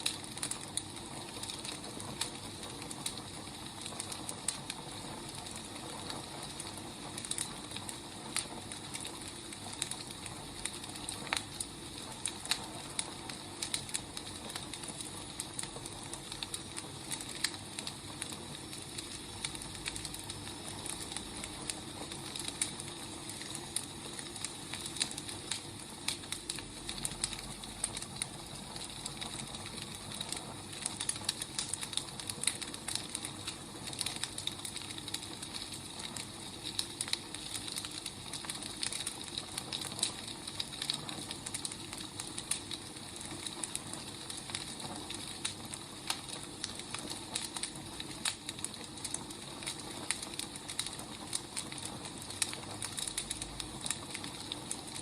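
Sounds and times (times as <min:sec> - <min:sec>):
soft fire hiss: 0:00.0 - 0:55.0
wood fire crackling and popping: 0:00.0 - 0:55.0.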